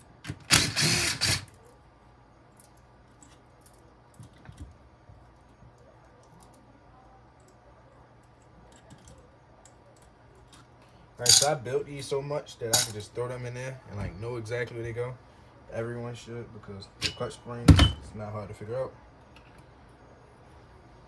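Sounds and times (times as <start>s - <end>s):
power driver whirring: 0.3s - 1.5s.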